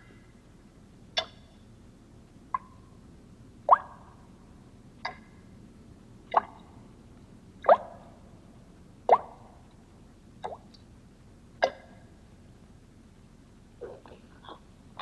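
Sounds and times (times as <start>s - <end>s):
water dripping: 2.5s - 2.8s, 9.1s - 10.9s.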